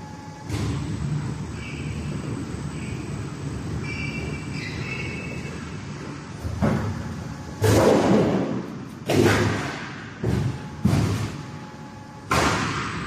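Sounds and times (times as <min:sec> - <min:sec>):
machinery humming: 0:00.0 - 0:13.0
heavy machine thumps: 0:07.6 - 0:11.5, 0:12.3 - 0:13.0.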